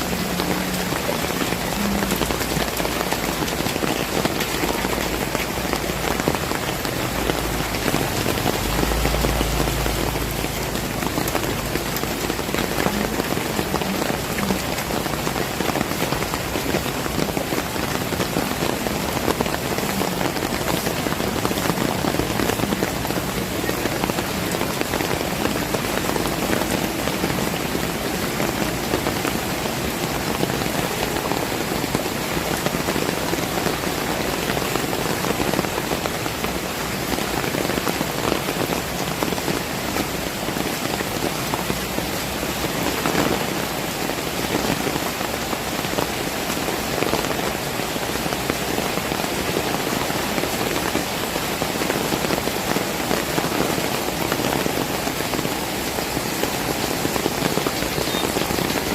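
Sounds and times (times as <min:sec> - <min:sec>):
heavy rain falling: 0:00.0 - 0:58.9.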